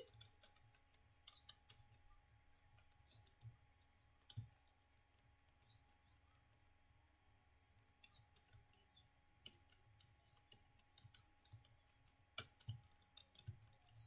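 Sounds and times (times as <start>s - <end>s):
computer keyboard typing: 0.0s - 3.6s, 4.2s - 4.8s, 8.0s - 14.0s.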